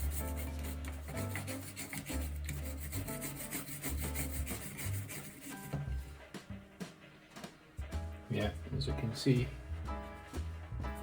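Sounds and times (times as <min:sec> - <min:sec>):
scrubbing a game controller: 0:00.0 - 0:06.4
background music with bass: 0:00.0 - 0:11.0.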